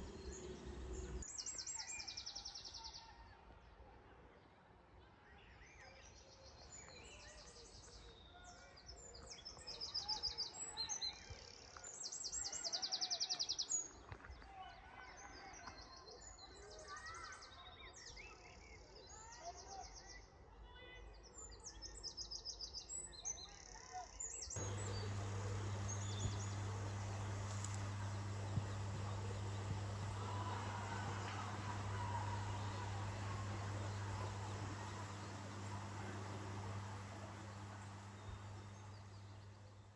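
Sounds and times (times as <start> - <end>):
steady low hum: 0.0 - 1.2, 24.6 - 39.9
songbirds singing: 24.6 - 39.9.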